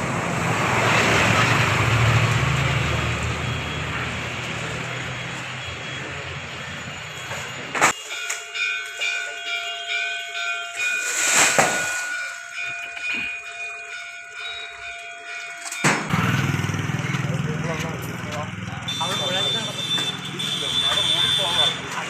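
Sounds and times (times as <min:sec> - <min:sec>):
music with bell-like tones: 0:08.0 - 0:16.9.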